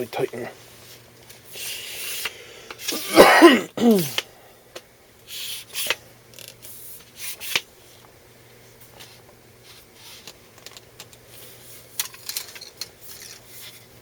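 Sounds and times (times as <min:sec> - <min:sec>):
man clearing his throat: 0:02.9 - 0:04.2.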